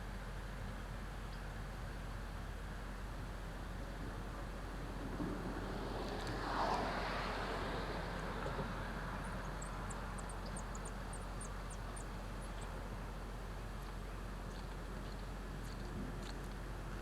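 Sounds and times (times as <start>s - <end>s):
outdoor background noise: 0.0s - 17.0s
vehicle passing: 4.1s - 10.7s.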